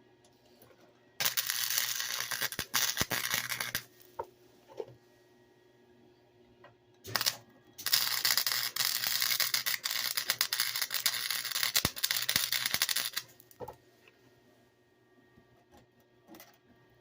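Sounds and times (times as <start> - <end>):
welding arc crackling: 1.2 - 4.0, 7.1 - 13.5.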